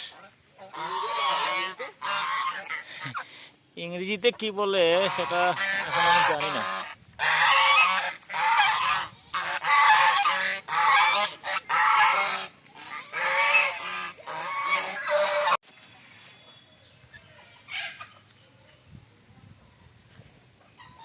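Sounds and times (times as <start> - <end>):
geese honking: 0.0 - 3.3, 4.8 - 15.6, 17.4 - 18.2.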